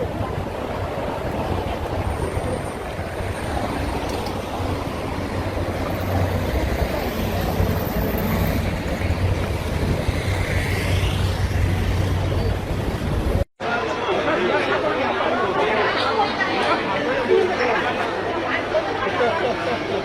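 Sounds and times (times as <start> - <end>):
traffic rumble: 0.0 - 13.5.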